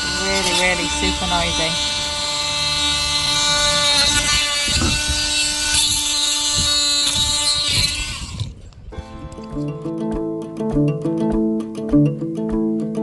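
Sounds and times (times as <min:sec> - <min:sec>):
power tool whining: 0:00.0 - 0:09.2.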